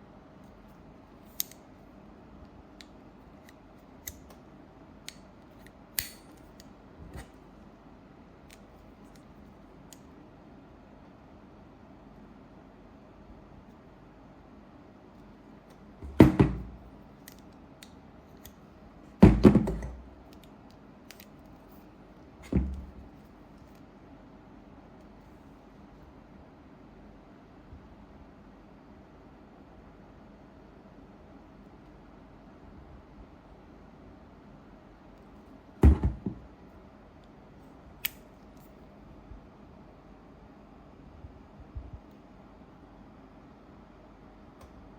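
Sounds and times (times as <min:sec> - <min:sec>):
sharp click: 0:06.0 - 0:07.3
heavy thump: 0:16.0 - 0:16.8, 0:22.5 - 0:23.0, 0:35.8 - 0:36.4
hard objects knocking: 0:35.8 - 0:36.4.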